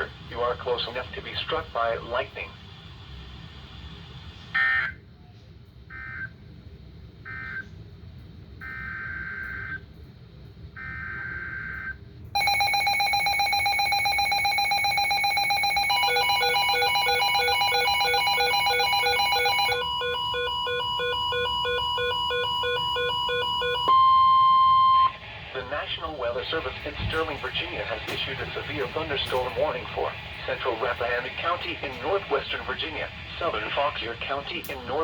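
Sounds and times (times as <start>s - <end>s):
electronic alarm beeping tones: 12.4s - 25.2s.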